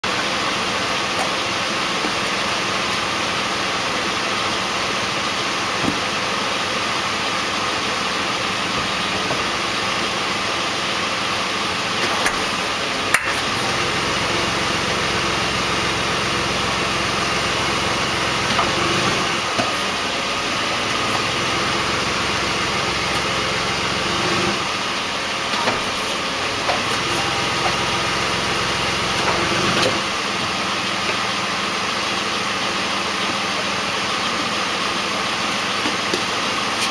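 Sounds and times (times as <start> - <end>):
car engine idling: 0.0 - 36.9.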